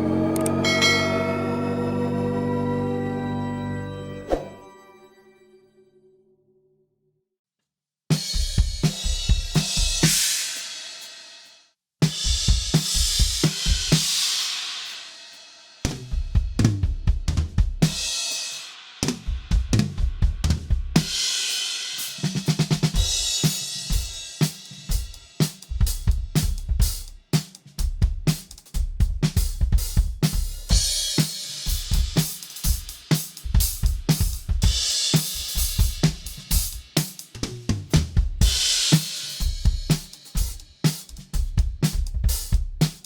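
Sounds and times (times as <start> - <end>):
crash cymbal hits: 0.0 - 2.8
kick and snare drums: 8.1 - 11.1, 12.0 - 15.1, 15.8 - 18.1, 19.0 - 43.0
hi-hat: 31.2 - 37.4.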